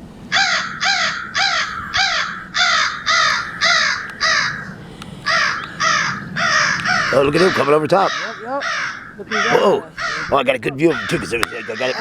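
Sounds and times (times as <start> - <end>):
crows cawing: 0.3 - 12.0.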